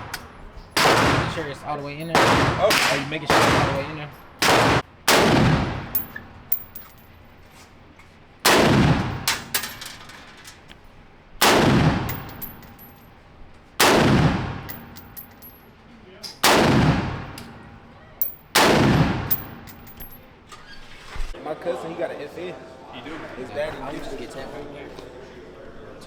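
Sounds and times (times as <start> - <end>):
handgun shots echoing: 0.1 - 7.0, 11.4 - 13.0, 13.8 - 15.6, 18.2 - 20.2
light metallic clinks: 6.0 - 7.4, 12.1 - 13.2, 14.6 - 15.8, 18.2 - 18.6, 19.3 - 20.4.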